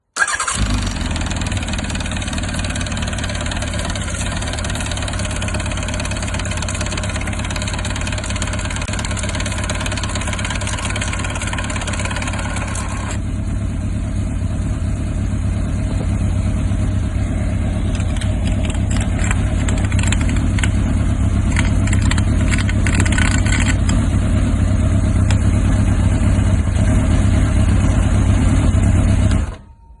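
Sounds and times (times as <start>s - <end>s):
motorcycle engine idling: 0.2s - 29.6s
clutch knocking rattle: 1.7s - 13.1s, 17.8s - 24.1s.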